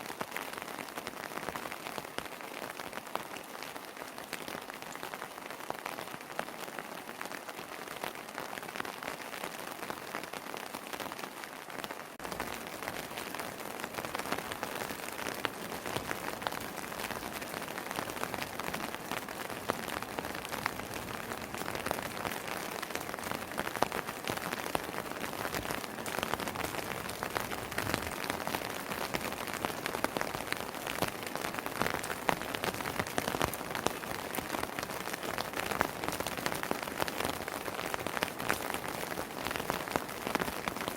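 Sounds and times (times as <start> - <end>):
rain pattering: 0.0 - 40.9
raindrops ticking sharply: 12.2 - 39.8.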